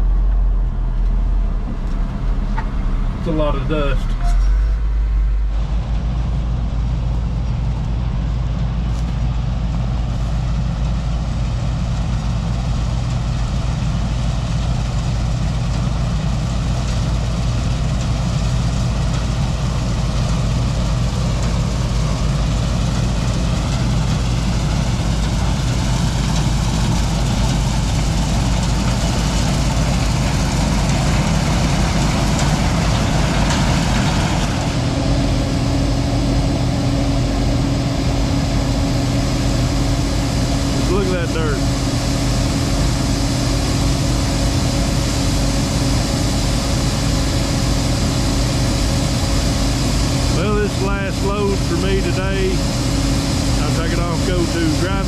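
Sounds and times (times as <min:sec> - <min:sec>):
combine harvester engine hum: 0:00.0 - 0:55.0
rush of threshing machinery: 0:12.0 - 0:55.0.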